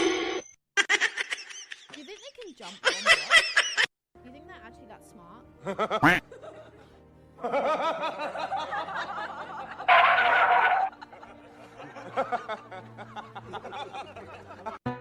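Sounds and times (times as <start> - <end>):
people laughing: 0.8 - 3.9, 5.6 - 14.8
harsh shriek: 9.9 - 10.9.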